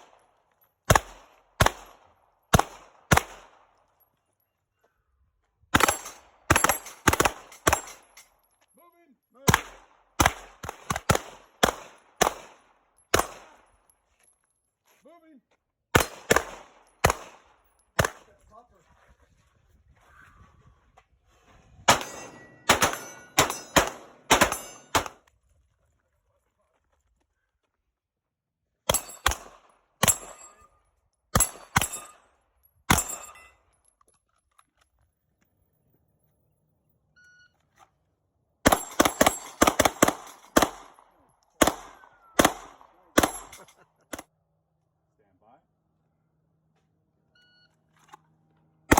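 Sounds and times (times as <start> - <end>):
gunshots with short echo: 21.9 - 25.2.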